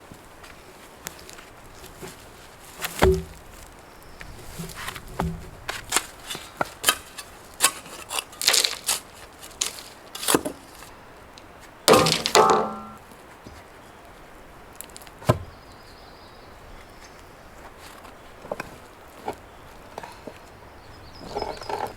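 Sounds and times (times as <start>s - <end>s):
wood knocking on wood: 3.0s - 3.4s, 11.9s - 13.0s.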